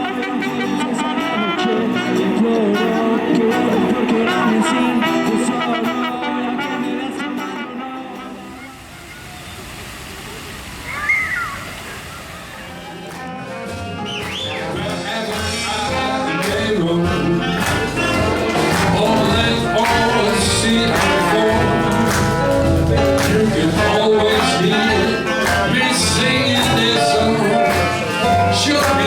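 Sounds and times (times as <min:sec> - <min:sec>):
music with steady beat: 0:12.8 - 0:29.0.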